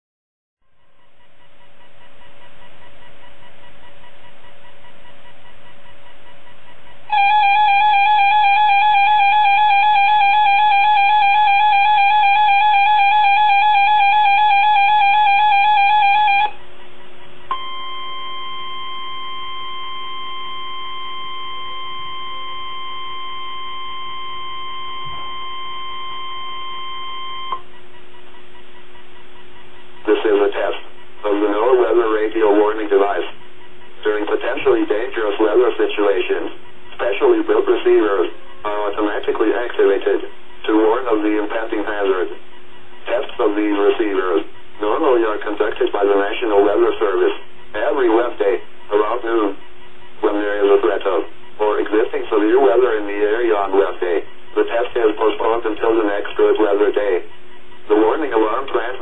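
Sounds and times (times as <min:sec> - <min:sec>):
steady warning alarm tone: 0:00.6 - 0:59.0
warbling alert tone: 0:06.9 - 0:16.6
radio hiss: 0:27.6 - 0:59.0.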